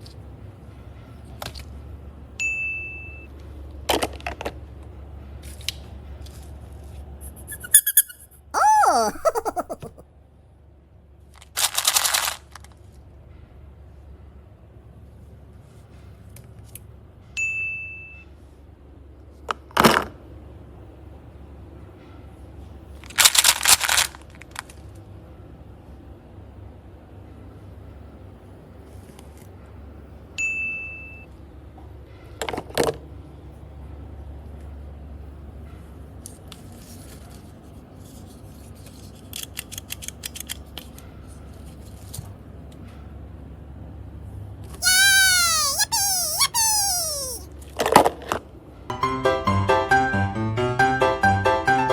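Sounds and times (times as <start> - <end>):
slime and clay worked by hand: 44.8 - 47.4.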